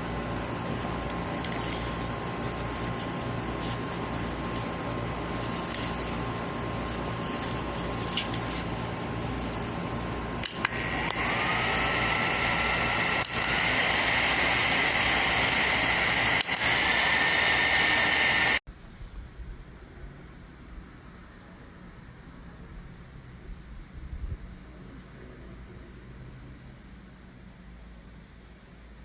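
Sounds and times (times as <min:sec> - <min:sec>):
small fan whirring: 0:00.0 - 0:18.6.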